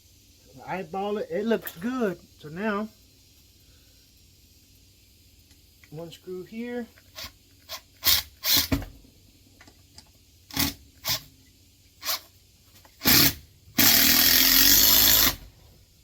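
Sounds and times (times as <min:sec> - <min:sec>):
power drill driving a screw: 0:07.2 - 0:08.7, 0:10.5 - 0:11.3, 0:12.0 - 0:12.3, 0:13.0 - 0:15.4.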